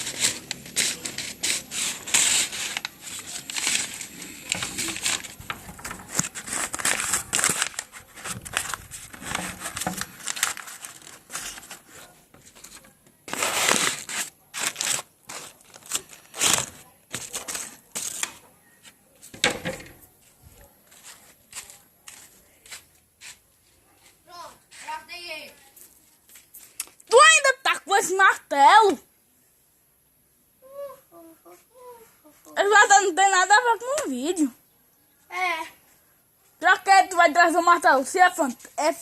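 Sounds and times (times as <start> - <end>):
rustling and crinkling: 0.0 - 27.3, 35.8 - 39.0.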